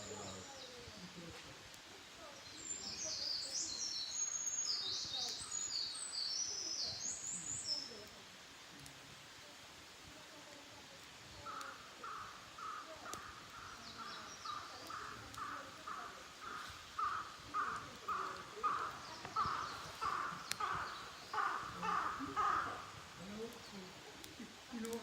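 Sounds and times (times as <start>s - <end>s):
faint bird chirps: 0.0s - 1.0s, 2.2s - 8.1s.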